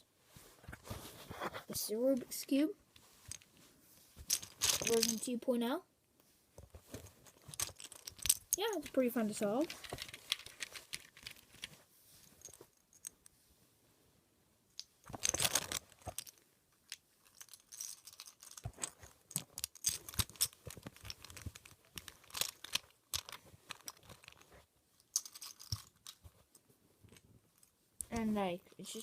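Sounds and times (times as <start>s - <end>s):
puzzle cube plastic clicks and rattles: 4.3s - 5.3s, 7.3s - 11.7s, 14.8s - 28.2s.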